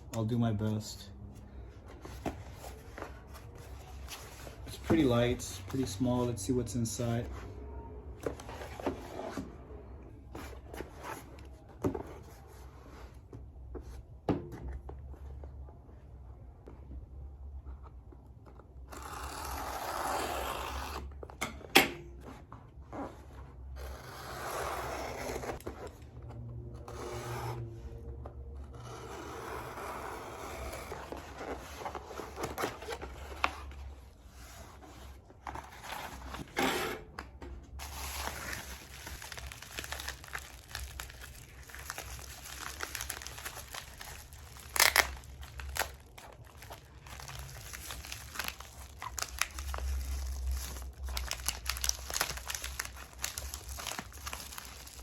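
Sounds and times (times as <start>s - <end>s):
wrapping tearing and crinkling: 37.8s - 55.0s.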